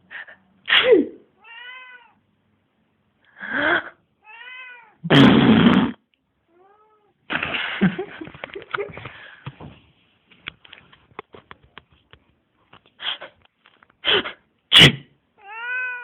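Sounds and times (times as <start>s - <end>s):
cat meowing: 1.4s - 2.2s, 4.2s - 5.0s, 6.5s - 7.2s, 15.4s - 16.0s
rustling and clicking: 8.1s - 14.0s.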